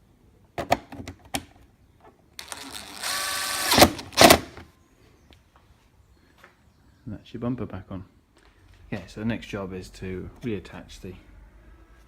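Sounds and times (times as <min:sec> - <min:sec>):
electric screwdriver whirring: 0:02.4 - 0:04.6.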